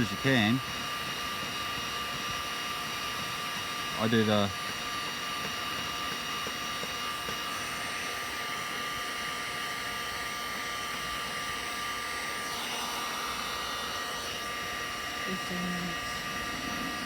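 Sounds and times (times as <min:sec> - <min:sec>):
heat gun fan blowing: 0:00.0 - 0:17.0.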